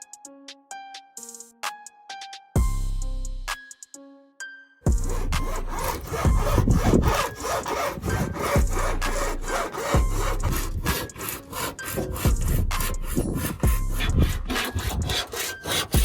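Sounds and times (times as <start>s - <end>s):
cutting wire rasping through glue: 4.9s - 16.0s.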